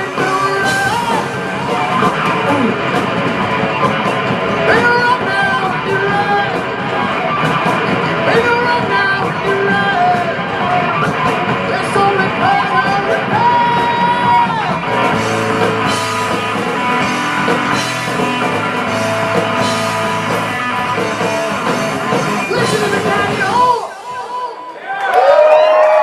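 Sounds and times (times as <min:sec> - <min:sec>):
person singing: 0:00.0 - 0:03.0, 0:04.6 - 0:07.4, 0:08.0 - 0:15.0, 0:22.1 - 0:24.7
rock band playing: 0:00.0 - 0:24.6.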